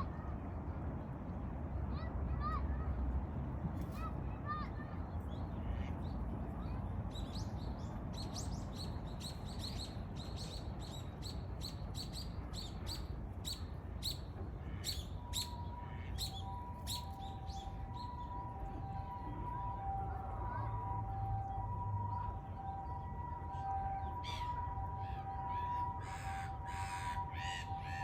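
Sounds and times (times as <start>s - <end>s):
sparrows chirping: 7.1s - 19.2s
distant two-tone siren: 14.9s - 28.0s.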